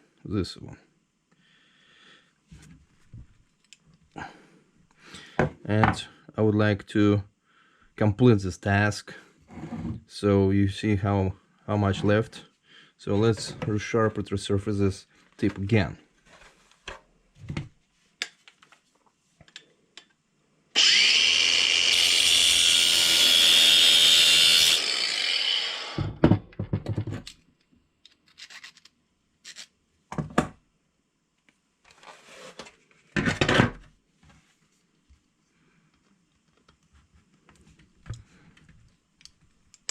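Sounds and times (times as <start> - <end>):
power grinder grinding metal: 20.8 - 26.1.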